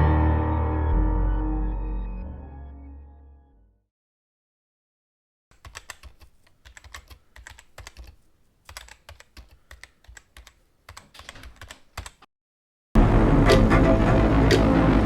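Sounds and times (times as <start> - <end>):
typing on a keyboard: 5.5 - 12.3.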